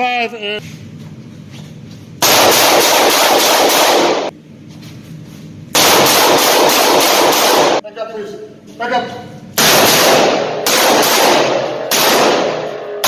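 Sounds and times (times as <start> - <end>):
rapid pistol fire: 2.2 - 4.3, 5.7 - 7.8, 9.6 - 13.0.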